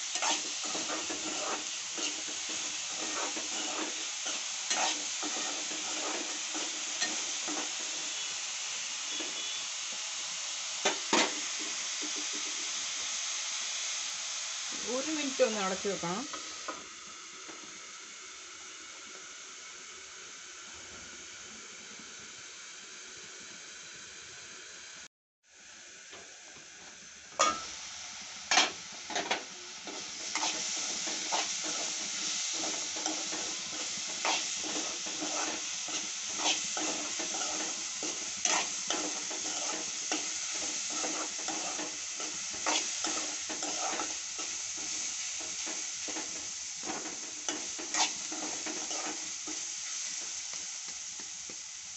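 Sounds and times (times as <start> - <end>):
onions sizzling in oil: 0.0 - 51.9
spoon scraping a pan: 0.1 - 8.4, 28.5 - 50.3.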